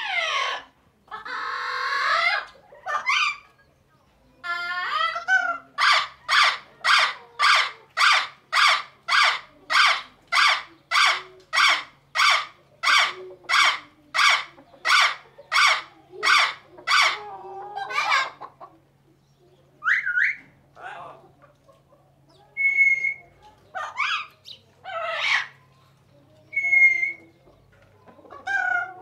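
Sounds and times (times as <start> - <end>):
parrot squawking: 0.0 - 3.4, 4.4 - 18.4, 23.8 - 25.6.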